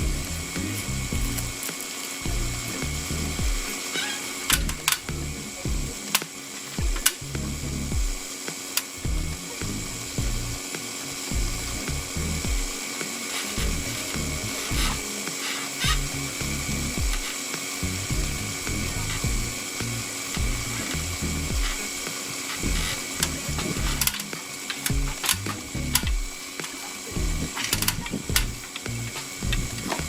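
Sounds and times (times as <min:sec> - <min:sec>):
low rumbling: 0:00.0 - 0:01.6, 0:02.3 - 0:03.6, 0:04.5 - 0:06.0, 0:09.0 - 0:10.6, 0:11.3 - 0:12.6, 0:17.8 - 0:21.7, 0:22.6 - 0:24.1, 0:24.9 - 0:26.2, 0:27.2 - 0:30.0
vacuum pump whine: 0:00.0 - 0:30.0.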